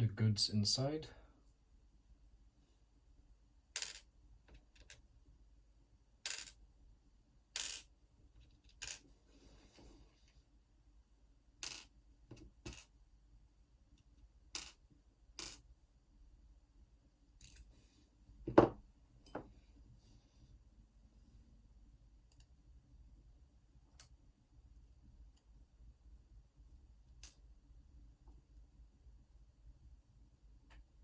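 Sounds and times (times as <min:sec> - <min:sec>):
small metal clicks and clinks: 0:17.4 - 0:17.7.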